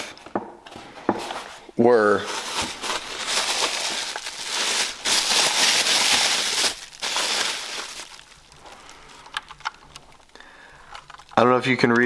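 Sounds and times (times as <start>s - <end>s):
paper rustling and crinkling: 0.8s - 10.3s.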